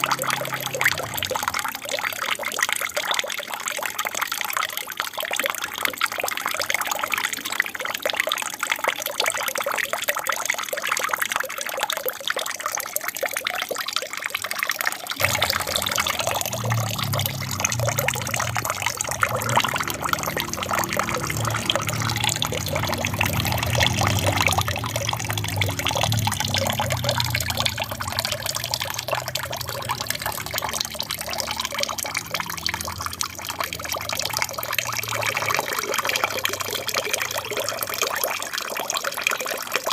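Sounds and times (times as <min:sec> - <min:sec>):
water trickling and splashing: 0:00.0 - 0:39.9
low rumble: 0:15.2 - 0:30.8.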